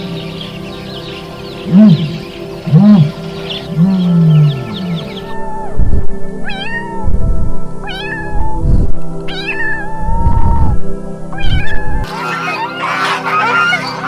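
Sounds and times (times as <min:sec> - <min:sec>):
background music: 0:00.0 - 0:14.0
cat meowing: 0:05.3 - 0:07.2, 0:07.8 - 0:08.6, 0:09.3 - 0:10.8, 0:11.4 - 0:12.1.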